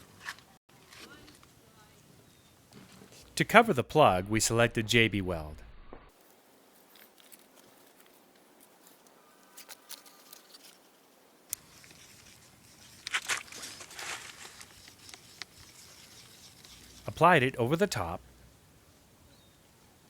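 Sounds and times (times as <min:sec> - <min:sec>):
epoxy scraping and tapping on metal: 0:14.2 - 0:17.2.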